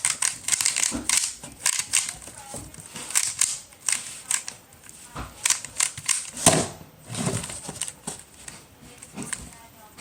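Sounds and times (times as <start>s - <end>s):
puzzle cube layers clacking: 0.0s - 2.4s.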